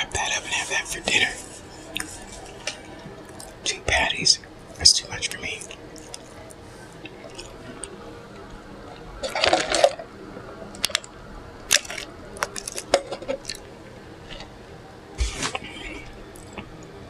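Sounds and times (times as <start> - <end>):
wet mouth eating sounds: 2.0 - 3.6, 11.7 - 13.7.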